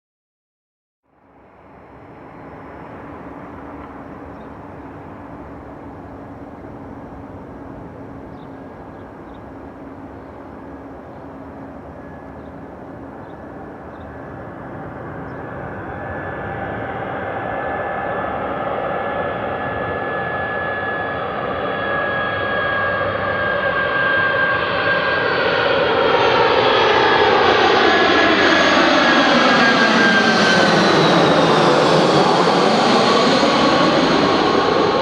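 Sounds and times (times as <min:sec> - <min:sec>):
jet engine high whine: 0:01.1 - 0:35.0
jet engines rushing hum: 0:01.2 - 0:35.0.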